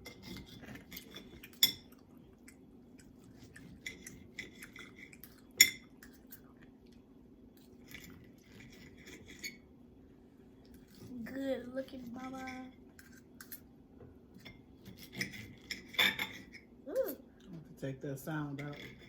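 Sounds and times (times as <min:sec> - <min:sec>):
knife and fork scraping plate: 0:00.0 - 0:01.8, 0:07.9 - 0:09.7, 0:14.4 - 0:16.7, 0:18.4 - 0:19.0.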